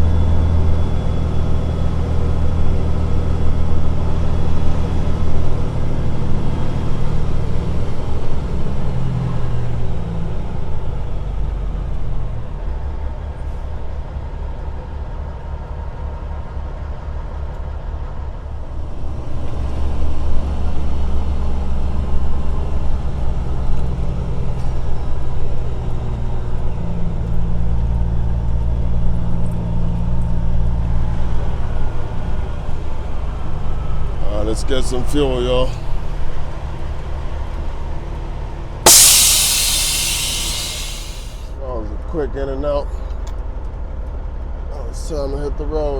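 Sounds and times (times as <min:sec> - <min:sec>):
heavy diesel truck engine: 0:38.9 - 0:41.4.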